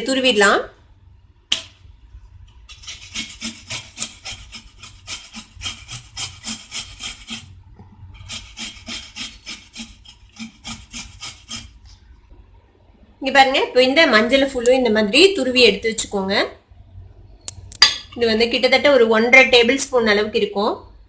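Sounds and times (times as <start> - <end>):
root grated on a grater: 2.7 - 11.9.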